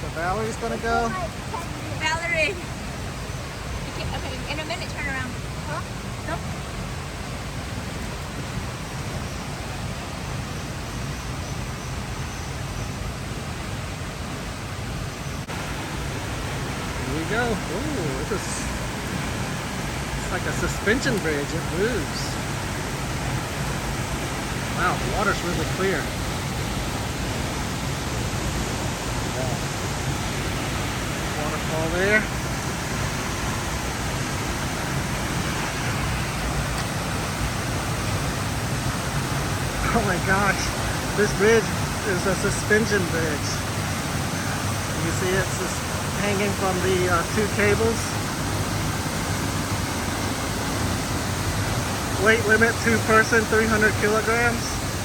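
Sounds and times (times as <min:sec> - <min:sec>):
river water flowing: 0:00.0 - 0:55.0.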